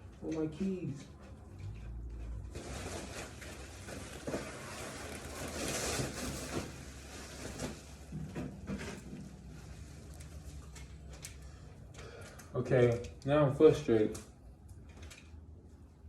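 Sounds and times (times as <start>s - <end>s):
rustling and scraping: 1.0s - 11.4s.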